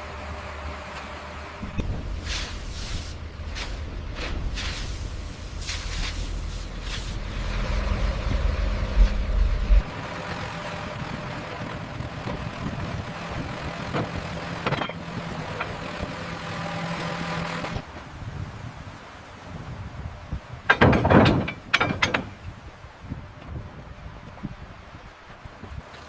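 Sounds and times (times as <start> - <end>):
steady engine hum: 0.0 - 20.7
engine low rumble: 0.0 - 26.0.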